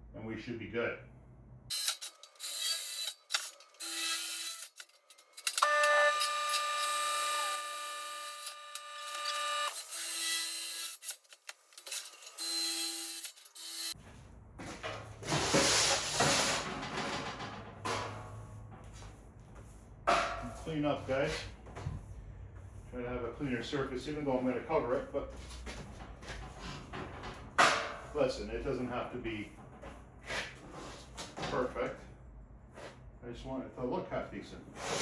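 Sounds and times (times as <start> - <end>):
power tool motor whining: 1.7 - 14.0
metal scraping and knocks: 14.8 - 19.2.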